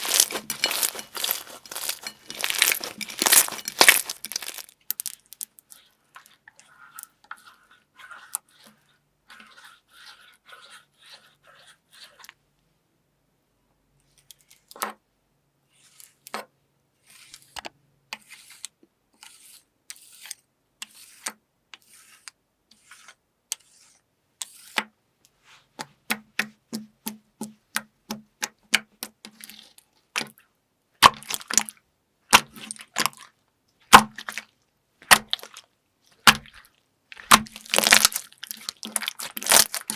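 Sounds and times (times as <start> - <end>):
brittle material crackling and snapping: 0.0 - 5.7, 33.9 - 39.9.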